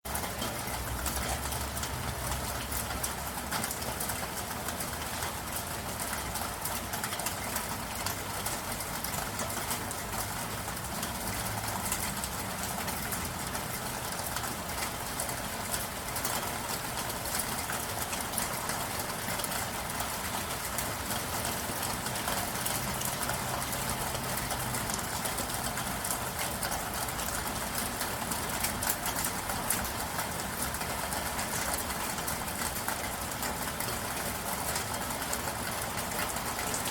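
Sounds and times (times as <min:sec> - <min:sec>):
soft rain: 0:00.1 - 0:36.9.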